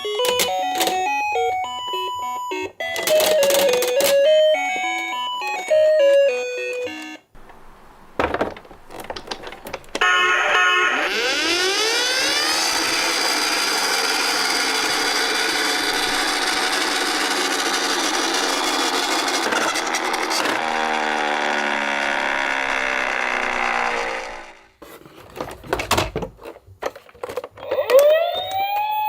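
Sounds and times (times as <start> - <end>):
toy cars rolling down a slope: 10.9 - 24.8.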